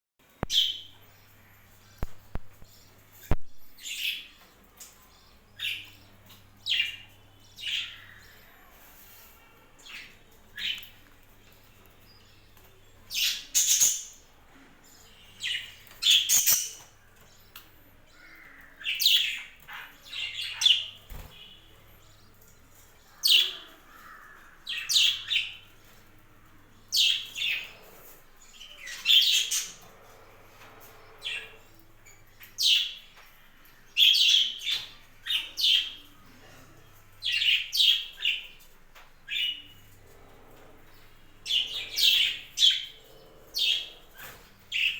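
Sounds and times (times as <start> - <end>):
budgerigars chirping: 13.2 - 14.3, 15.4 - 17.0.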